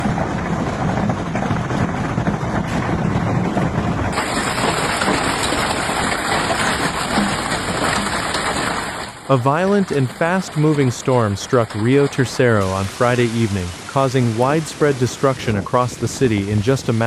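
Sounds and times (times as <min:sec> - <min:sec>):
low rumble: 0:00.0 - 0:08.2
wind buffeting microphone: 0:00.0 - 0:08.8
torrential rain and hail: 0:00.0 - 0:17.0.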